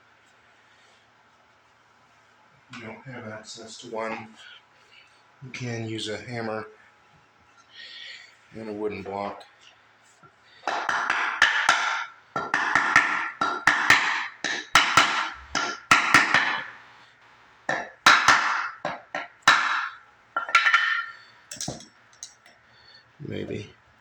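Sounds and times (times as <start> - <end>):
hammer striking wooden block: 10.6 - 16.8, 17.7 - 21.8.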